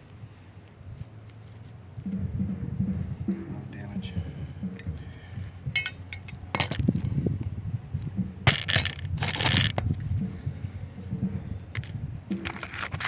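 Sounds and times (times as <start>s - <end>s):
sharp clattering impacts: 5.6s - 7.3s, 8.2s - 9.9s, 11.7s - 13.0s.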